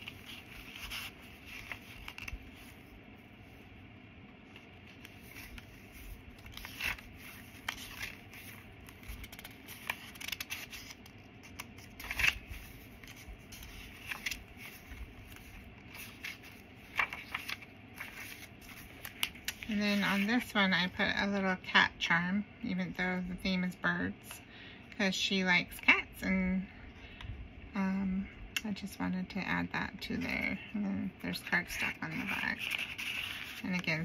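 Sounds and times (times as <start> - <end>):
paper pages rustling: 0.0 - 2.9, 4.4 - 20.7, 31.6 - 34.0
paper scraping: 5.0 - 20.4, 31.7 - 34.0.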